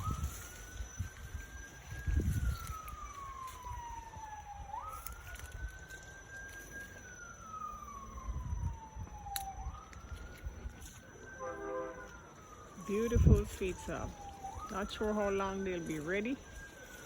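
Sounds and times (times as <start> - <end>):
wind buffeting microphone: 0.0 - 5.7, 7.6 - 10.9, 12.5 - 15.4
siren wailing: 0.0 - 17.0.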